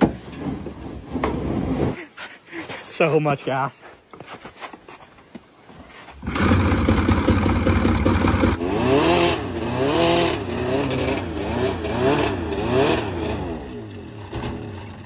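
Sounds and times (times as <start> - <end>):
hovercraft engine surging: 6.2 - 15.0.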